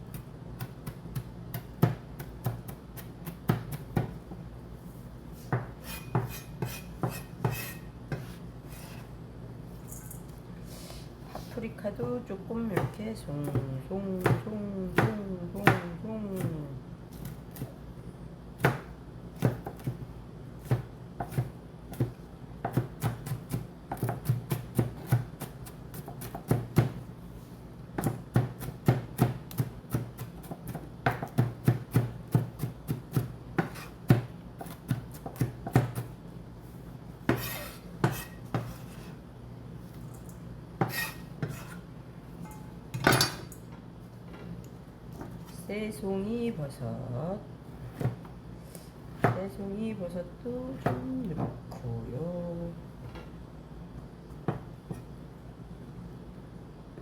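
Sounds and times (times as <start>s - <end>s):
knife chopping on cutting board: 0.1s - 4.2s, 5.4s - 9.0s, 18.6s - 20.0s, 20.6s - 27.0s, 28.0s - 36.1s, 37.2s - 39.1s, 40.8s - 41.8s.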